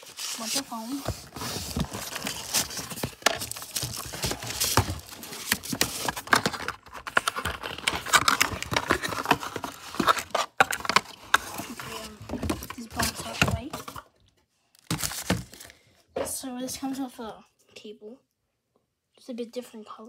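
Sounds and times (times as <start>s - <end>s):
foam and plastic crinkling: 0.0s - 14.1s, 14.7s - 15.8s.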